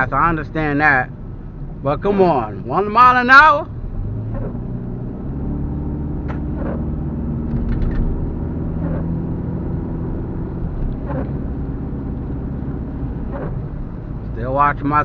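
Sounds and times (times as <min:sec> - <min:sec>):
car engine and road noise: 0:00.0 - 0:15.0.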